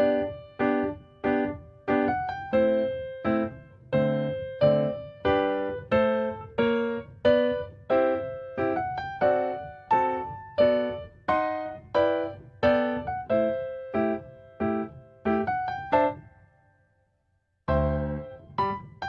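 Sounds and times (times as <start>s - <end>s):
keyboard chords: 17.7s - 19.0s.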